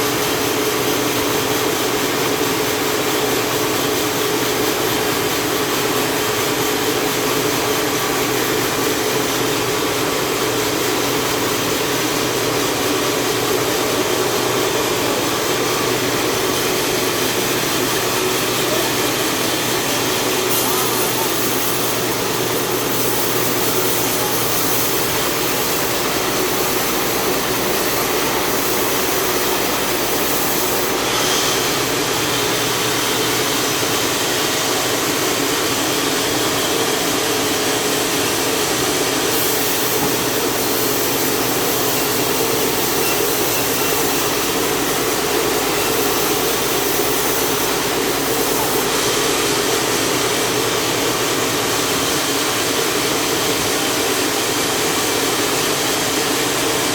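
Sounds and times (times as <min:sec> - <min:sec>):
powered saw ripping a log: 0:17.9 - 0:32.8, 0:39.4 - 0:50.0.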